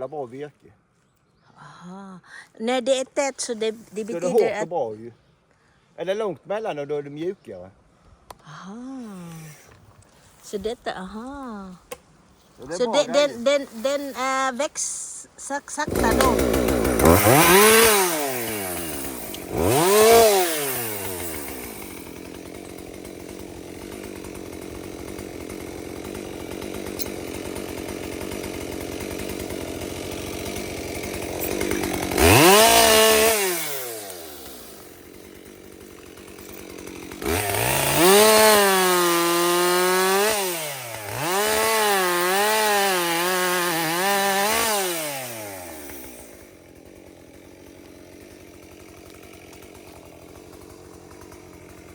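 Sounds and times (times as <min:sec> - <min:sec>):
chainsaw revving and cutting log: 0:03.2 - 0:04.8, 0:12.4 - 0:51.9.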